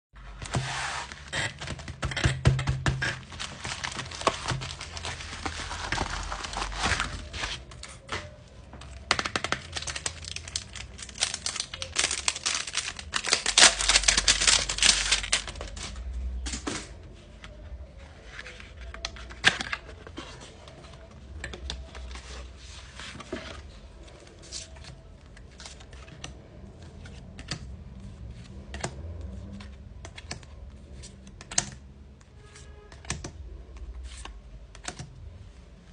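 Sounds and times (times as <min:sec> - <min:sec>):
plastic wrap and paper crinkling: 0:03.0 - 0:08.4, 0:09.2 - 0:16.4.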